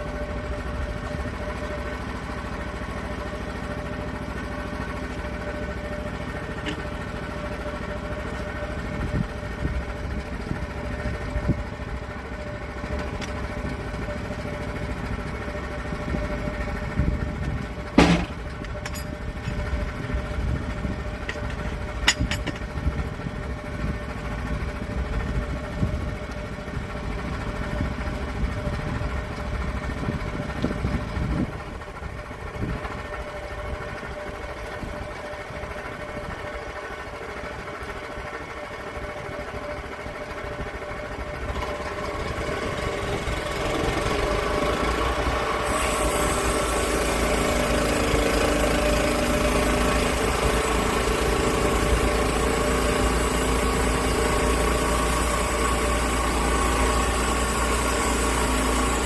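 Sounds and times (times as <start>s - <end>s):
sawmill petrol engine running: 0.0s - 59.0s
hiss: 45.5s - 47.7s.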